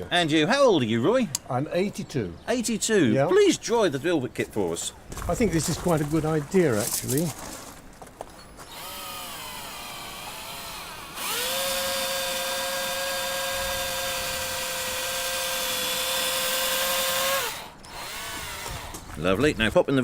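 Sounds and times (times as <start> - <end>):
electric drill whining: 8.6 - 19.1.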